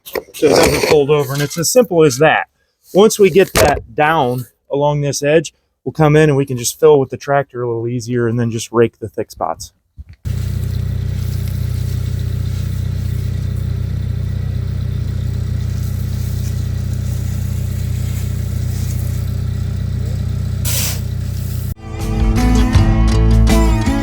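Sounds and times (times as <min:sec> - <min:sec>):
skid steer engine running: 0:10.3 - 0:24.0.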